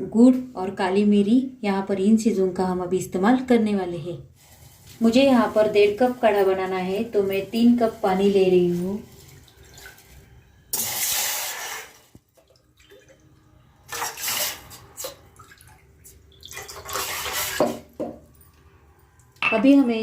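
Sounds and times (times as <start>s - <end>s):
water pouring into pot: 9.2s - 17.8s.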